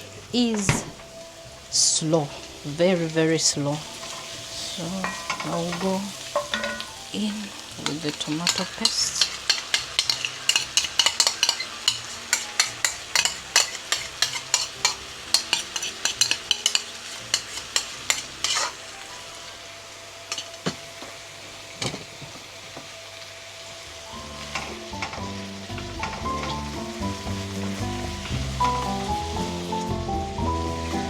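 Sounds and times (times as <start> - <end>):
background music: 0.0 - 19.5, 23.0 - 31.0
food sizzling: 0.0 - 31.0
spoon stirring and scraping pot: 3.9 - 18.8
spoon clicking on pot: 5.0 - 7.0, 7.8 - 18.7.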